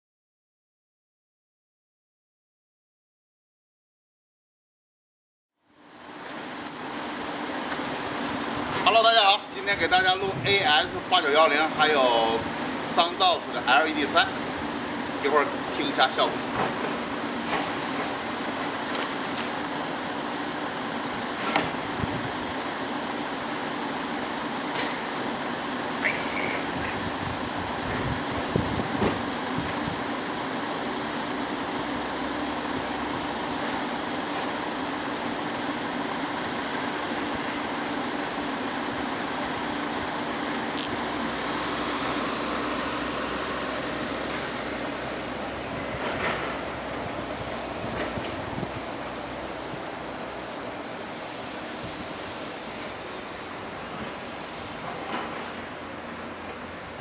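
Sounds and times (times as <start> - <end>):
vehicle running with low hum: 14.3 - 57.0.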